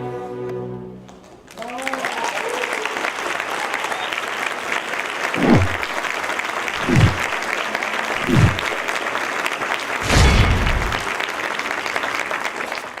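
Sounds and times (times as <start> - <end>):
audience applauding: 1.1 - 13.0
deep thuds dropping in pitch: 5.4 - 6.0, 6.8 - 7.4, 8.2 - 8.8.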